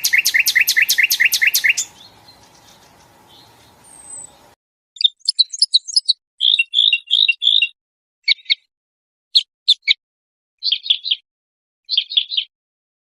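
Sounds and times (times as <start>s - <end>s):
songbird chirps and trills: 0.0s - 8.7s.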